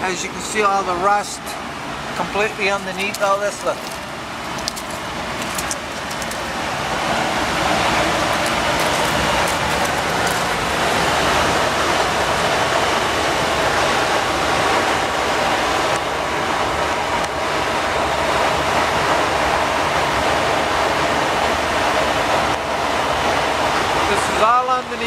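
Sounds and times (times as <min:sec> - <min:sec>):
steady rushing noise: 0:01.0 - 0:17.0.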